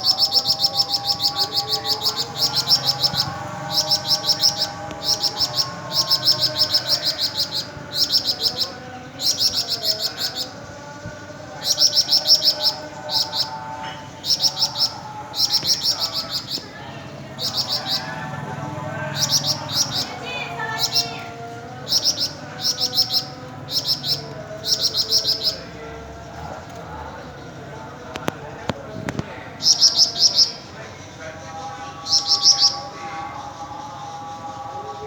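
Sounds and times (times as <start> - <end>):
songbird singing high notes: 0.0 - 10.6.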